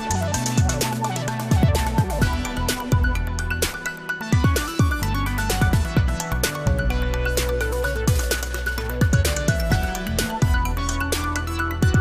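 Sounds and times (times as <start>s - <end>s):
electronic music: 0.0s - 12.0s.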